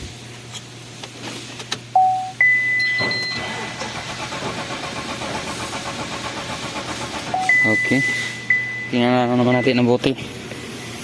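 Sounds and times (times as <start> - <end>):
car warning beeps: 2.0 - 3.8, 7.3 - 10.1
starter motor cranking engine: 3.3 - 7.8.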